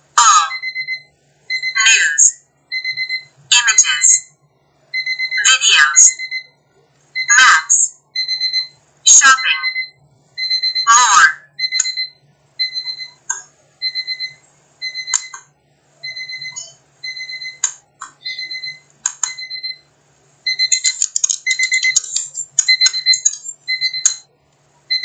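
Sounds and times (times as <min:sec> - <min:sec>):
phone alarm beeping: 0:00.2 - 0:06.6, 0:07.2 - 0:13.2, 0:13.8 - 0:15.4, 0:16.0 - 0:17.6, 0:18.2 - 0:24.3
sharp clicks: 0:20.7 - 0:24.2.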